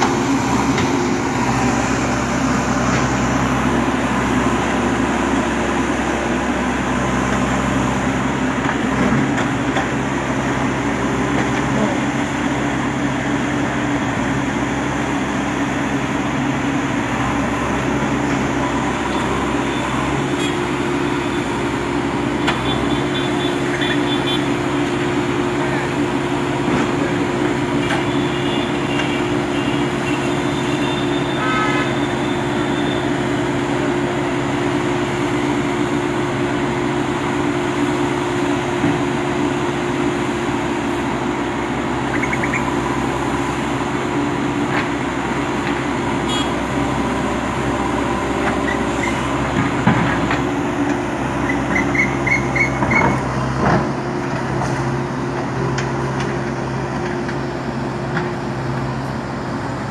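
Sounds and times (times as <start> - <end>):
bulldozer diesel engine running: 0.0 - 59.9
short high squeaks: 51.5 - 53.2.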